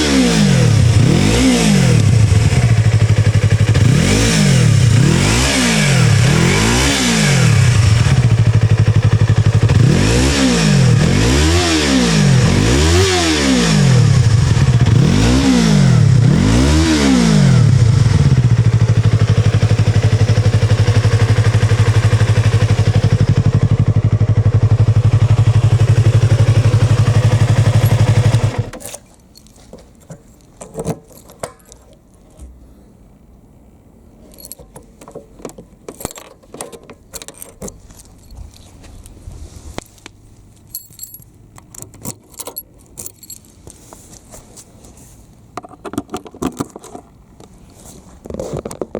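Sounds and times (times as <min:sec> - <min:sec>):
motorcycle engine revving and idling: 0:00.0 - 0:28.8.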